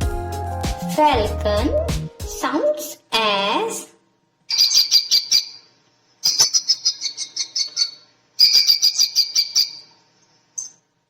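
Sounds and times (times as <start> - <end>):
falcon calling: 4.5 - 5.6.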